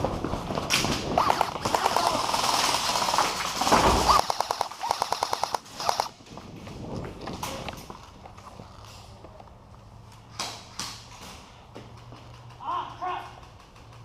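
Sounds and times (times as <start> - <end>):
airsoft guns firing full auto: 0.8 - 6.2.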